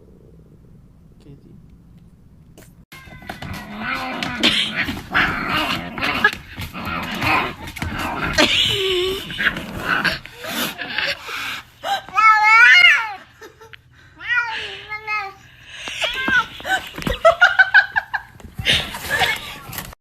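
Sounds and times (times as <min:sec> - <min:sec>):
dog growling and snarling: 0:03.4 - 0:11.7.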